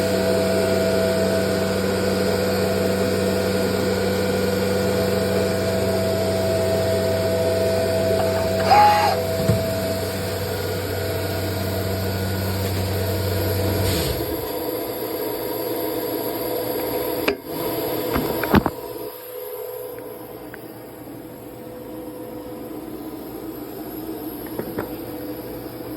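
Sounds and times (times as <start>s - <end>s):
machine mechanical hum: 0.0s - 25.9s
high machine whir: 0.6s - 14.6s.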